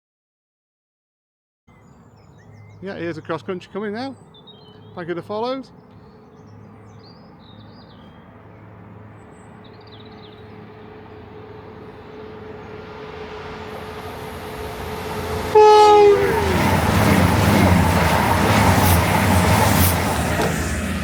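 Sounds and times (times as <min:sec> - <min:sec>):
diesel train running noise: 0:04.8 - 0:21.0
loud train horn blast: 0:15.4 - 0:16.8.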